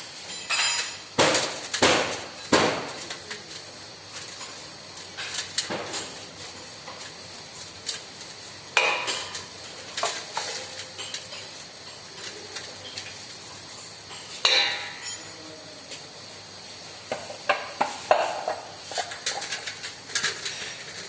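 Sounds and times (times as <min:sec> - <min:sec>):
metal tools clinking and knocking: 0:00.3 - 0:01.0.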